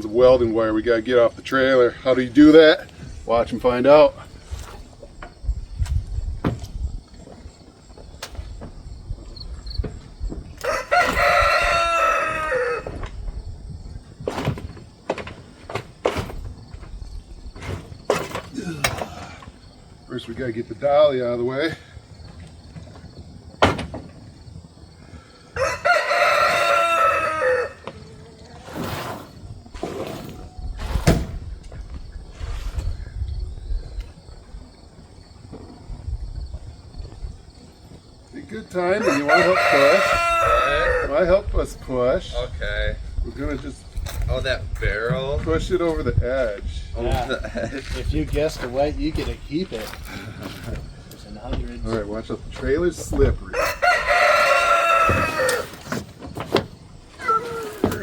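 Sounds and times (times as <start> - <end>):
rooster crowing: 10.6 - 13.0, 25.5 - 28.2, 38.9 - 41.2, 53.5 - 55.9
hand dolly rumbling and knocking: 12.8 - 19.6, 55.0 - 58.0.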